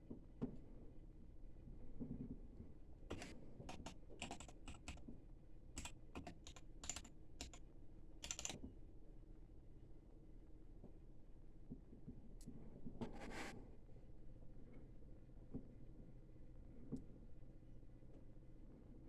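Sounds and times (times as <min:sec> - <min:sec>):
mechanical keyboard typing: 0:03.1 - 0:05.1, 0:05.8 - 0:07.6, 0:08.2 - 0:08.6.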